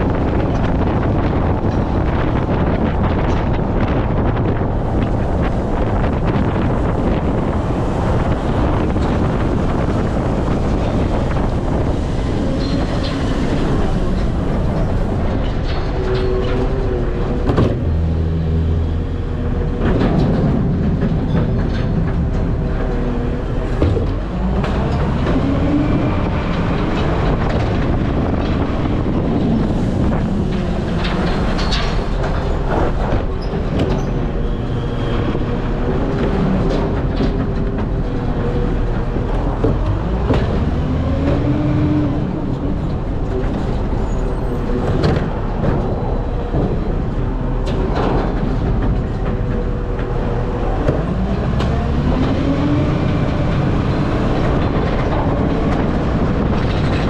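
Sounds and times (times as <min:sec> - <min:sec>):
heavy vehicle rumble: 0:00.0 - 0:57.0
wind buffeting microphone: 0:00.0 - 0:57.0.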